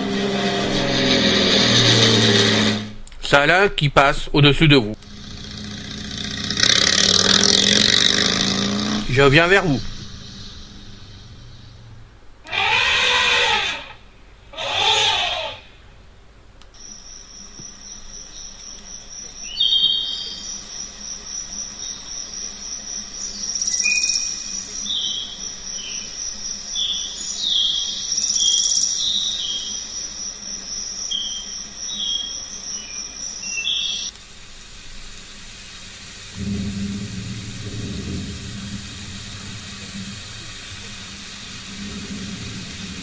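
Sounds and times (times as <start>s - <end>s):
pulsing high insect trill: 0.0s - 3.0s, 5.0s - 15.7s, 16.8s - 34.1s
low rumble: 0.0s - 3.1s, 4.9s - 12.4s, 36.1s - 43.0s
birds chirping: 0.0s - 16.0s, 16.7s - 34.1s.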